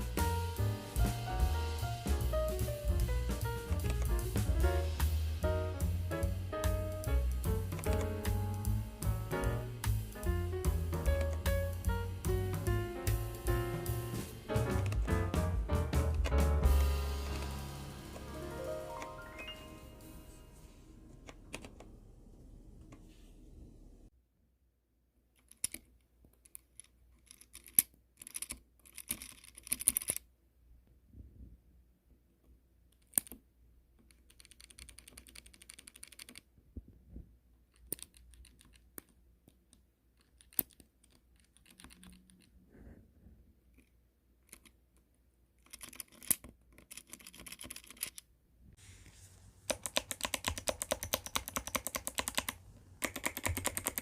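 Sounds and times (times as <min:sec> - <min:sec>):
mechanical keyboard key clacks: 0:07.7 - 0:08.4, 0:45.6 - 0:48.2, 0:49.7 - 0:54.0
fast clicky typing: 0:49.7 - 0:54.0.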